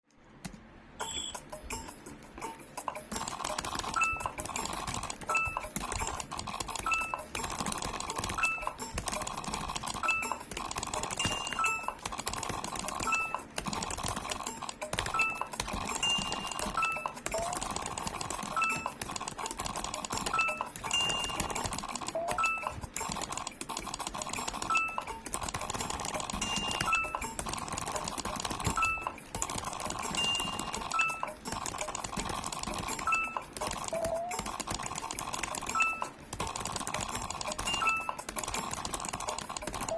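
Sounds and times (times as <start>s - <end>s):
short high beep: 1.0s - 1.4s
keyboard keystroke clicks: 2.9s - 39.9s.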